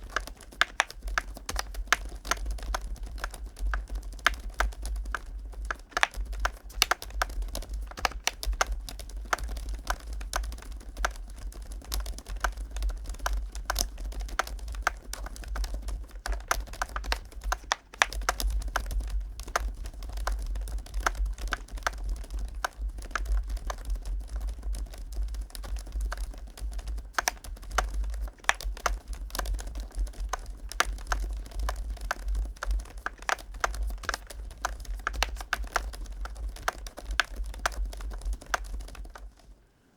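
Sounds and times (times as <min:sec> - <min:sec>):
fast keyboard typing: 0:00.0 - 0:39.6.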